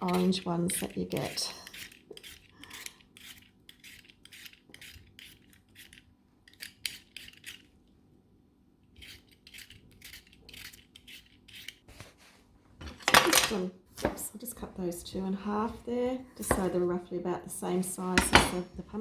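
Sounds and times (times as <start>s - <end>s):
peeler scraping a potato: 0.0s - 7.7s, 8.9s - 11.9s.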